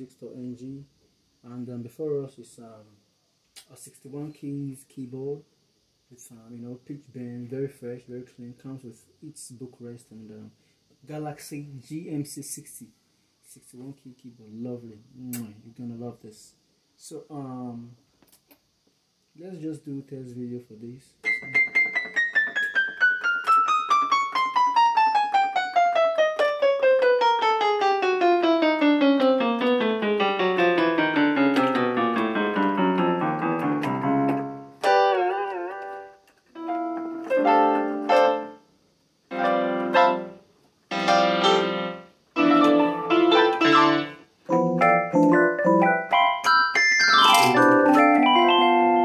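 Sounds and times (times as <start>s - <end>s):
electronic keyboard piano notes: 21.2s - 38.6s, 39.3s - 49.0s.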